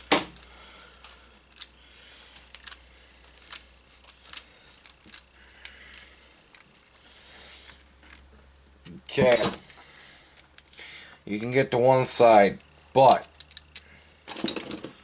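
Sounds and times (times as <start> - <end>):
steady low hum: 0.0 - 15.0
metallic clicks and taps: 13.1 - 13.9.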